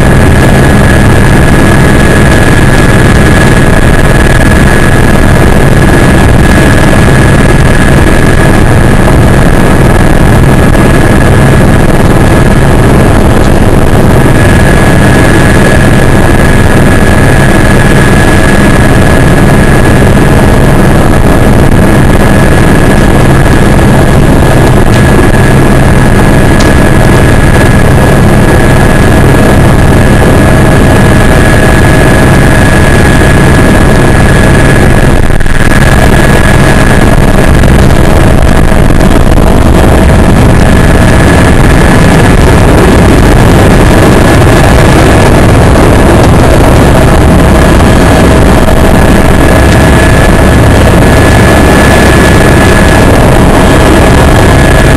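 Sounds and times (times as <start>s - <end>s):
helicopter engine and rotor: 0.0s - 54.9s.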